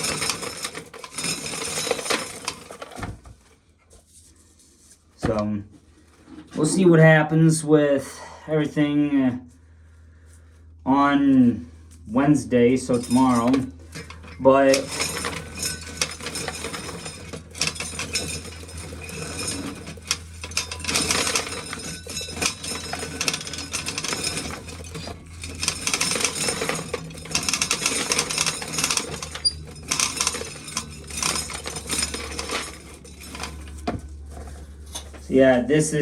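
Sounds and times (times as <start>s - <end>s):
corn kernels rattling and clinking: 0.0s - 3.0s, 12.9s - 35.1s.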